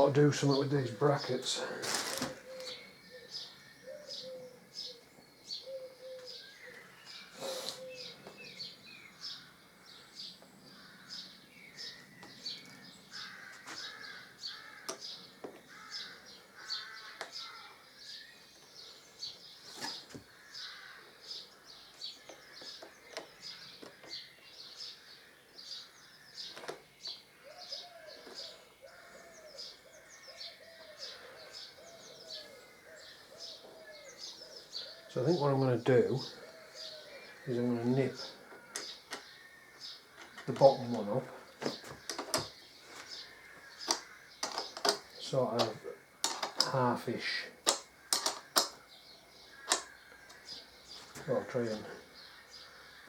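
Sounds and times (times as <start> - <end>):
birds chirping: 0.0 - 53.0
short repeated lower bird calls: 0.0 - 53.0
sharp clicks from handling parts: 41.6 - 43.2, 43.8 - 46.8, 47.6 - 48.8, 49.6 - 50.5.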